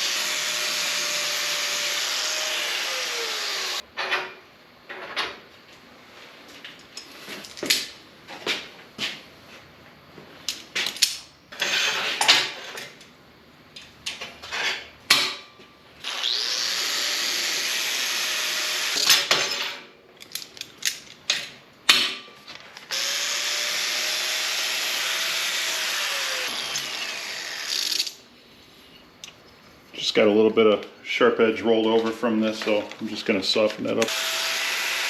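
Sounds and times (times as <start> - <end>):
power tool motor running: 0.0 - 3.8, 16.0 - 19.1, 22.9 - 28.2, 34.1 - 35.0.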